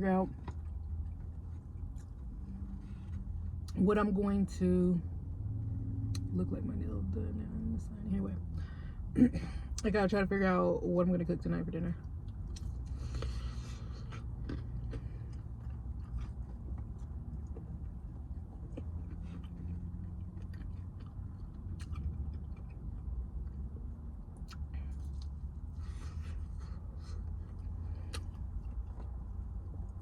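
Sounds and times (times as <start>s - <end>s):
steady low hum: 0.0s - 30.0s
chewing and mouth sounds: 12.0s - 30.0s.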